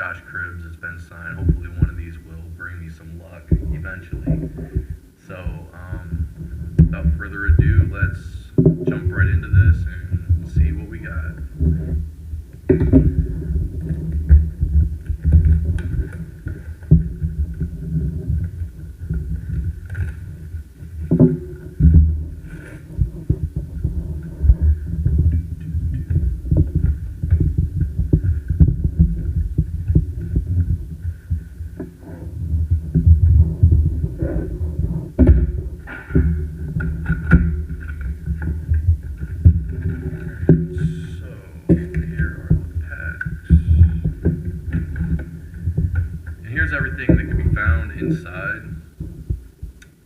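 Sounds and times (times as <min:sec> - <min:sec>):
faint steady high hum: 0:00.0 - 0:50.0.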